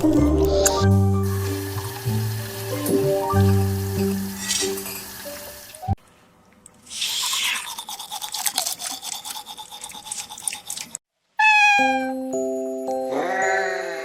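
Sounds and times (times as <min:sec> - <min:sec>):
scratchy scrubbing strokes: 0:06.9 - 0:11.0.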